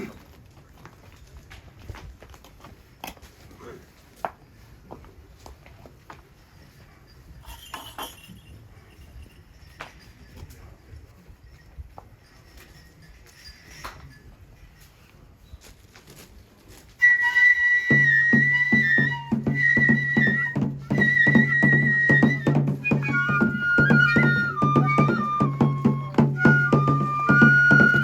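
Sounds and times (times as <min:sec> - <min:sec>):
high bamboo flute melody: 0:17.0 - 0:28.0
drums striking quickly: 0:19.4 - 0:28.0.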